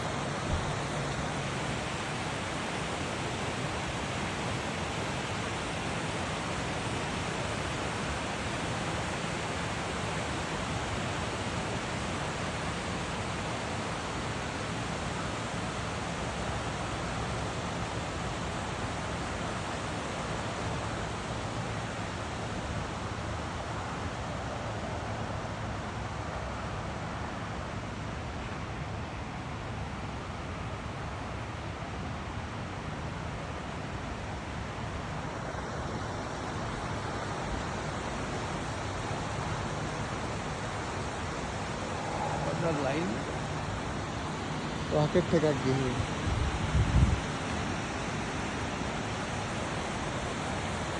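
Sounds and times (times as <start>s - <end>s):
waterfall rushing: 35.1s - 50.9s.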